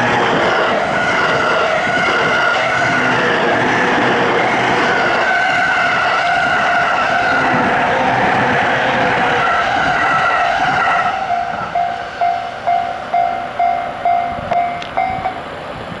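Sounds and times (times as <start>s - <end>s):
electric train rumbling past: 0.0s - 16.0s
wheel squeal: 0.0s - 16.0s
level crossing bell ringing: 11.2s - 15.4s.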